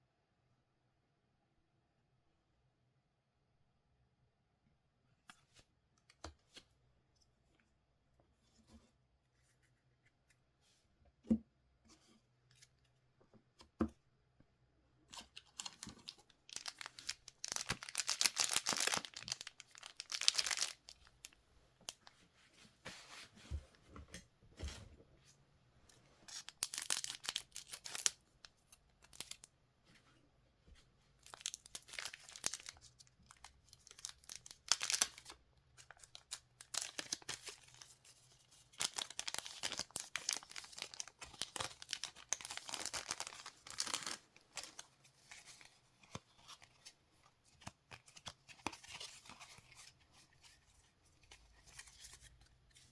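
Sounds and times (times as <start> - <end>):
foil wrappers crinkling: 15.5 - 21.1, 26.4 - 28.2, 31.2 - 35.3, 35.9 - 38.0, 38.6 - 45.6.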